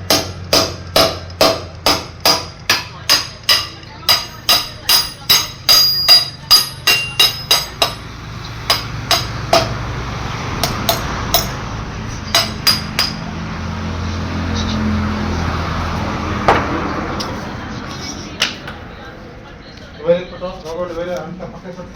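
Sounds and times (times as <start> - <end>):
hammer striking metal: 0.0 - 9.8, 10.6 - 13.4.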